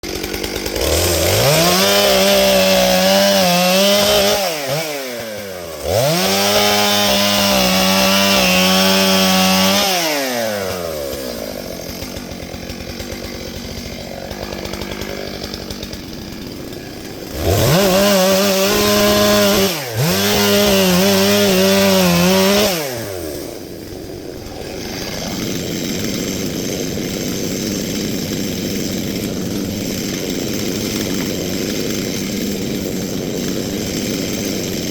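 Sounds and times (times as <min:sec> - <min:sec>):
chainsaw cutting wood: 0:00.0 - 0:34.9
chainsaw idling: 0:00.0 - 0:34.9.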